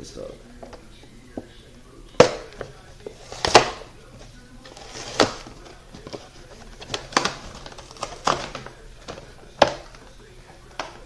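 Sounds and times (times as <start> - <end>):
plastic and cardboard crackling: 0.0 - 11.0
plastic packaging tearing: 2.2 - 11.0.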